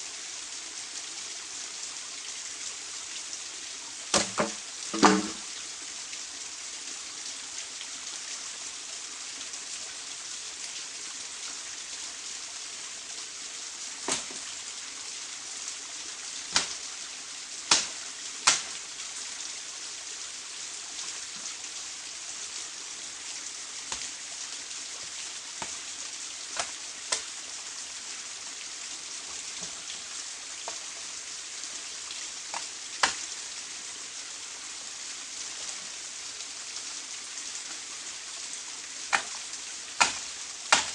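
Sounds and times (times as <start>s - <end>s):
rain hissing: 0.0s - 7.9s, 8.6s - 40.9s
sharp taps or knocks: 4.2s - 5.4s.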